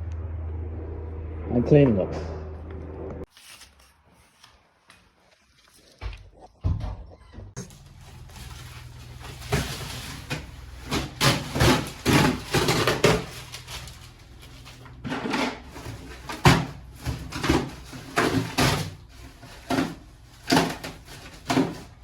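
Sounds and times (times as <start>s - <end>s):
steady low hum: 0.0s - 3.3s
building work knocks and scrapes: 14.9s - 22.0s.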